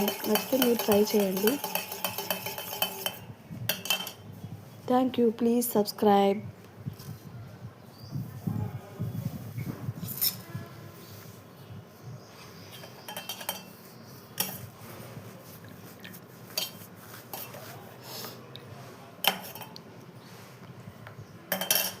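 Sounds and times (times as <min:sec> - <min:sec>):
metal cutlery clinking: 0:00.0 - 0:04.2, 0:21.5 - 0:22.0.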